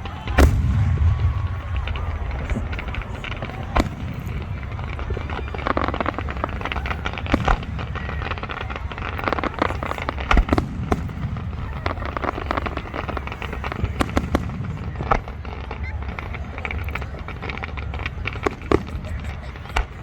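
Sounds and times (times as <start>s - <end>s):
firework bangs: 0.0s - 20.0s
fireworks crackling: 0.0s - 20.0s.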